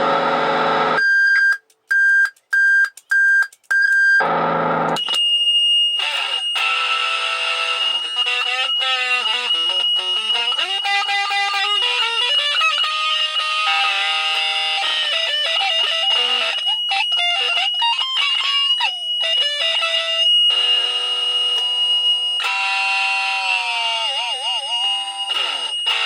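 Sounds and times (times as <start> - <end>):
steady high-pitched tone: 5.0 - 26.0
wavering pitched melody: 6.0 - 26.0.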